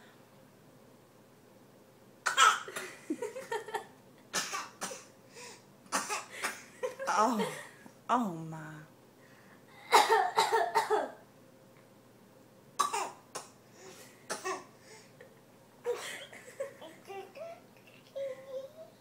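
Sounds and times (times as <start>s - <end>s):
person fake coughing: 9.9s - 11.2s.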